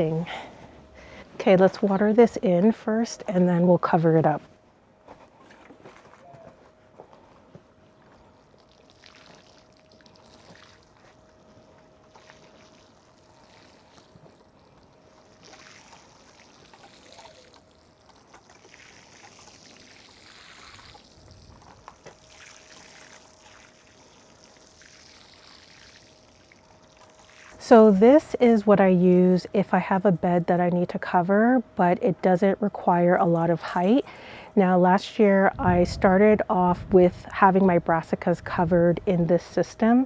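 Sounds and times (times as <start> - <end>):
water spraying onto soil: 22.0 - 27.6.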